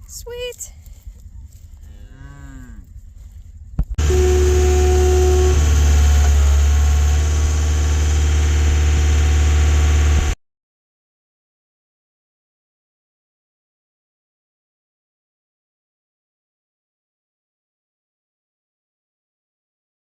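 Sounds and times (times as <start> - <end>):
cattle mooing: 1.9 - 2.9, 4.0 - 6.5
loud steady low rumble: 3.8 - 10.4.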